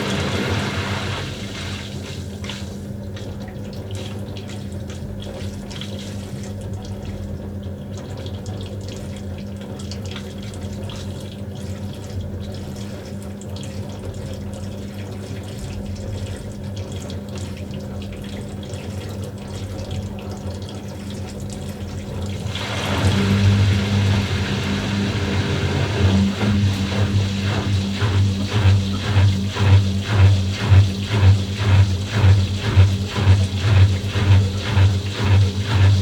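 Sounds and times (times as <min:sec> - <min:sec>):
water flowing in washing machine: 0:00.0 - 0:36.0.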